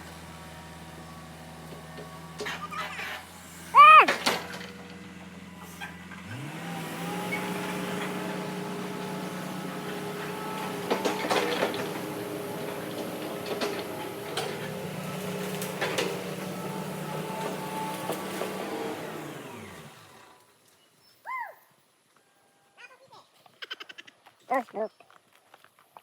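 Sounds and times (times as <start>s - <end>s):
excavator diesel engine running: 0.0s - 20.4s.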